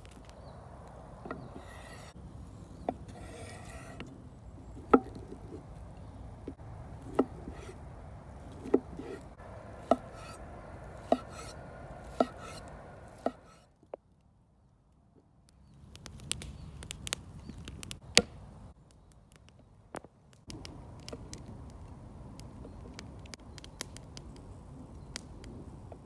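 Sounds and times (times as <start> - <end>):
knife chopping food: 11.0 - 11.5, 12.1 - 12.6, 13.2 - 13.6.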